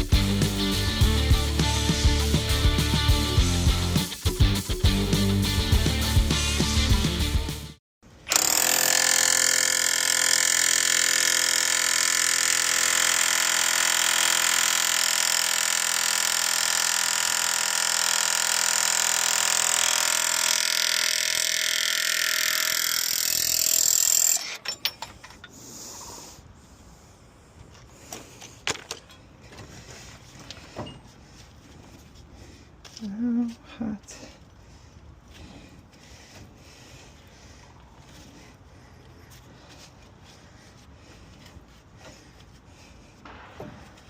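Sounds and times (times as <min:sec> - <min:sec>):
faint clanks and knocks: 0:27.7 - 0:31.2.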